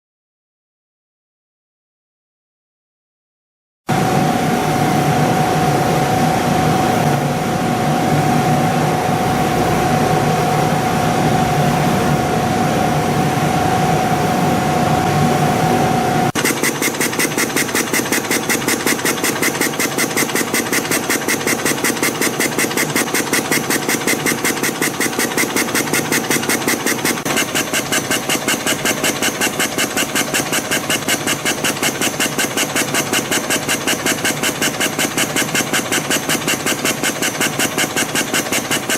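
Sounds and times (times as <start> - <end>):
machine mechanical hum: 3.9 - 38.9
spring coiling machine clatter: 16.4 - 38.9.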